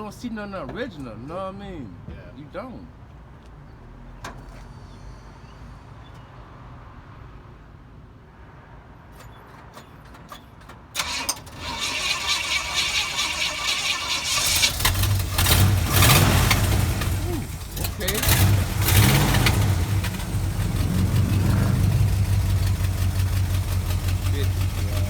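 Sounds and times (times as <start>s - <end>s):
car engine running: 11.0s - 25.0s
starter motor cranking: 11.0s - 25.0s.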